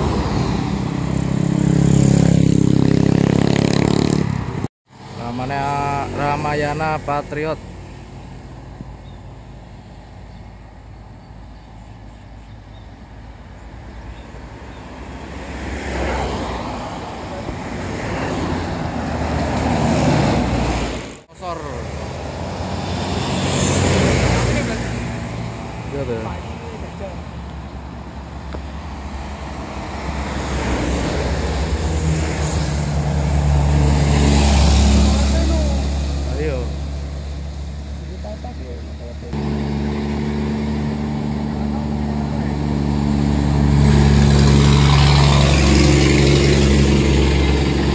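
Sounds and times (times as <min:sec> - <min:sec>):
road traffic noise: 0:00.0 - 0:47.9
vehicle passing close: 0:14.8 - 0:26.4, 0:28.7 - 0:47.9.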